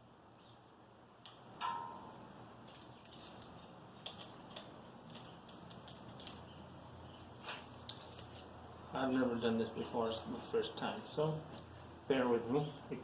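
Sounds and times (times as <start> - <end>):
metallic ring: 1.2 - 3.6, 5.1 - 8.7
metal hardware clinking: 1.2 - 8.7.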